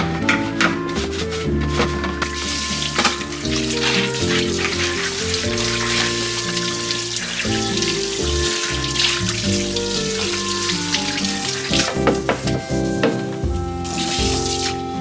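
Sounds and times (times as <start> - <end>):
dishes knocking together: 0.0 - 3.6
kitchen tap running: 0.0 - 14.9
light background music: 0.0 - 15.0.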